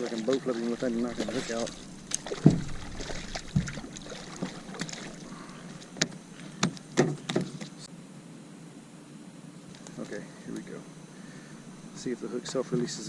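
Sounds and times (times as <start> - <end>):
knocks against kayak hull: 2.2 - 4.9.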